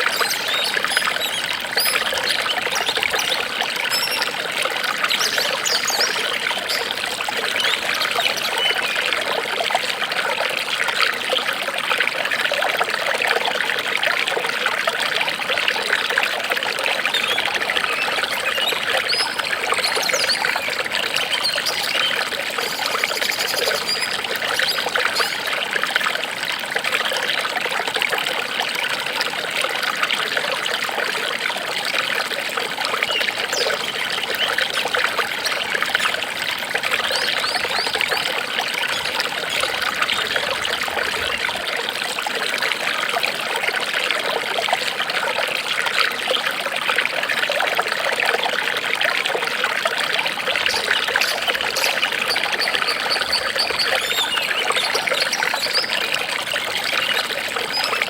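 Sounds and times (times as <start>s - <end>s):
water trickling and splashing: 0.0s - 58.0s.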